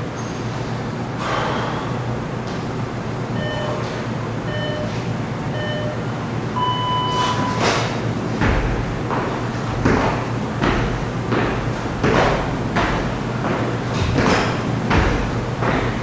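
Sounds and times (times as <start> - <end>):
room noise: 0.0 - 16.0
long timer beep: 3.4 - 3.8, 4.5 - 6.0, 6.6 - 7.6
short timer beeps: 3.4 - 3.8, 4.5 - 4.9, 5.5 - 6.0, 6.6 - 7.6.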